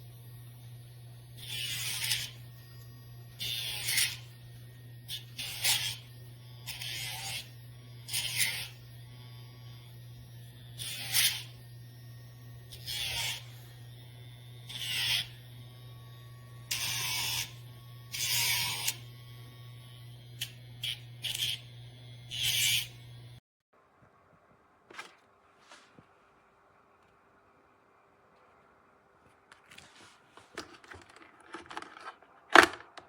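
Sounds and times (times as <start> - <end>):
grinder rasping on nails: 0.0 - 23.4
nail grinder humming: 0.0 - 23.4.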